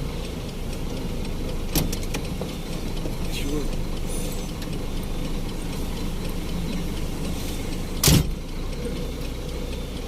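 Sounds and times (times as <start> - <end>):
faint ticking: 0.0 - 10.0
truck engine running: 0.0 - 10.0
sharp thump: 8.0 - 8.4.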